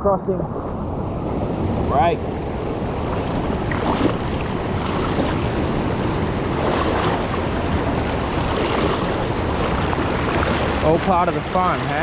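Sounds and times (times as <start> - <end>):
rushing creek water: 0.0 - 12.0.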